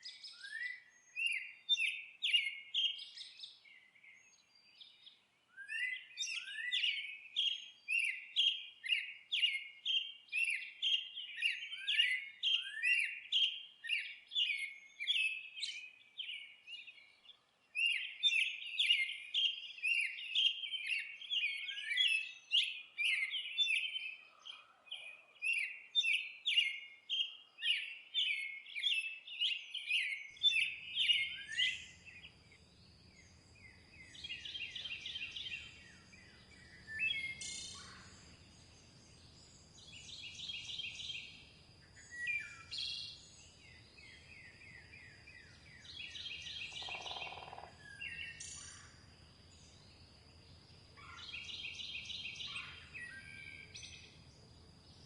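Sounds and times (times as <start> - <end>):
songbirds chirping: 0.0 - 55.0
high bird twittering: 45.9 - 48.9.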